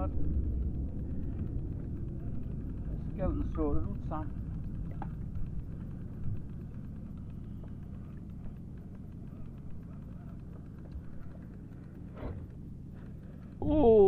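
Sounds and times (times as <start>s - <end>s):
wind buffeting microphone: 0.0s - 14.0s
faint clicks: 4.0s - 13.6s.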